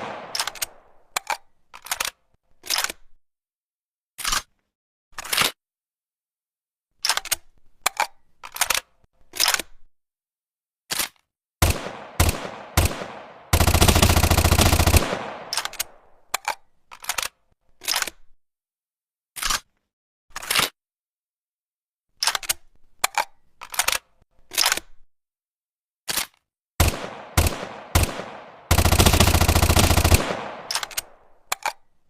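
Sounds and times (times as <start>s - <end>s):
submachine gun single shots: 0.0s - 0.9s, 11.6s - 16.1s, 26.8s - 31.3s
automatic gunfire burst: 11.6s - 16.0s, 26.8s - 31.2s.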